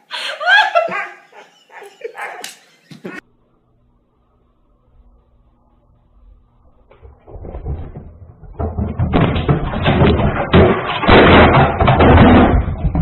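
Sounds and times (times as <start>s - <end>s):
loud thumps and knocks: 6.9s - 13.0s.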